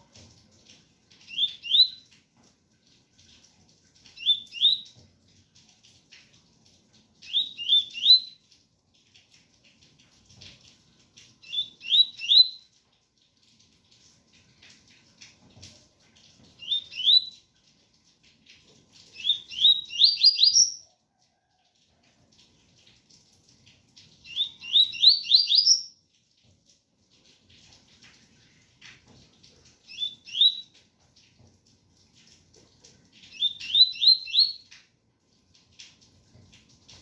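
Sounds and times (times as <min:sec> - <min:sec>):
bird singing whistled phrases: 0:01.3 - 0:02.0, 0:04.2 - 0:04.8, 0:07.2 - 0:08.4, 0:11.4 - 0:12.6, 0:16.6 - 0:17.4, 0:19.2 - 0:20.8, 0:24.3 - 0:25.9, 0:29.9 - 0:30.7, 0:33.3 - 0:34.6.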